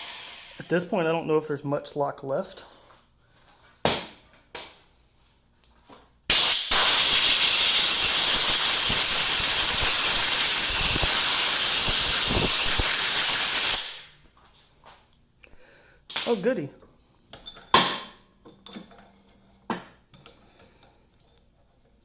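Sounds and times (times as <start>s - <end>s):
loud steady hiss: 0.0s - 0.9s, 6.3s - 14.2s.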